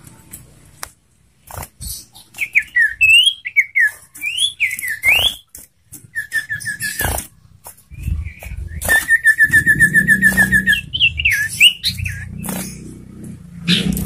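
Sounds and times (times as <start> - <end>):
bird singing whistled notes: 2.0 - 5.5, 6.1 - 7.1, 7.9 - 13.0.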